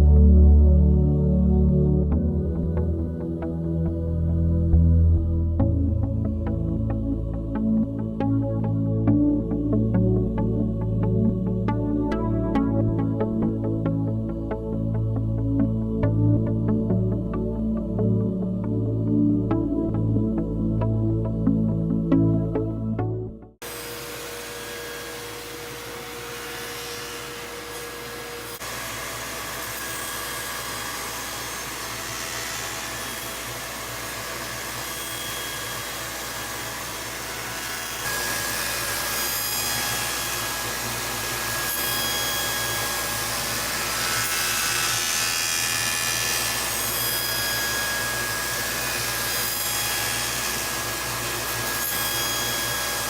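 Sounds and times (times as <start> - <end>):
machine whirring and grinding: 23.6 - 53.0.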